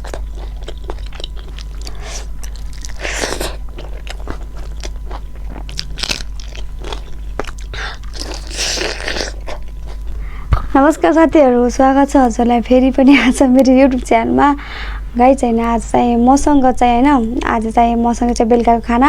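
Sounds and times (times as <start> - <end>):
person crunching and chewing food: 0.0 - 10.8
steady low hum: 0.0 - 19.0.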